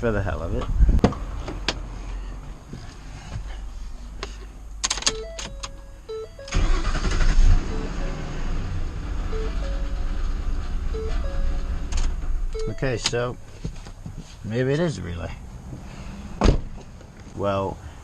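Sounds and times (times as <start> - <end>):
truck engine starting and running: 4.7 - 13.5.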